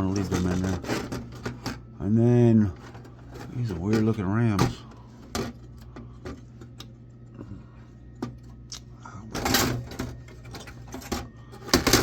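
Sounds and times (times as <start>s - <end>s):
scraping rustle: 0.0s - 1.8s
low steady hum: 0.0s - 12.0s.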